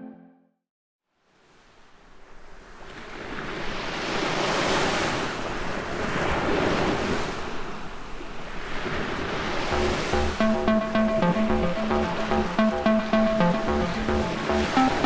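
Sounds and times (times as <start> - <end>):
ocean waves washing in: 8.8 - 15.0.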